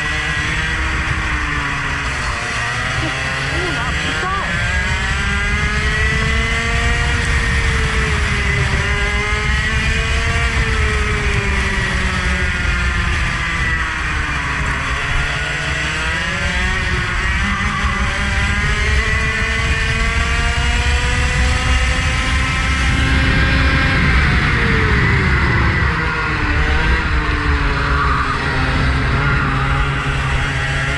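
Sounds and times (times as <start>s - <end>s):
vehicle engine at high revs: 0.0s - 30.9s.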